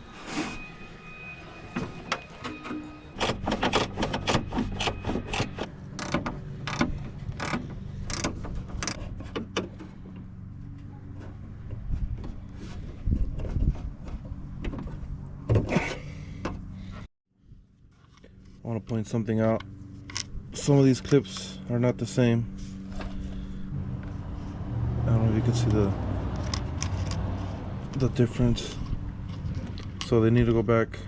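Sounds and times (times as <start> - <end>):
metallic clicks and ratcheting: 3.2 - 9.0
low hum: 19.2 - 28.0.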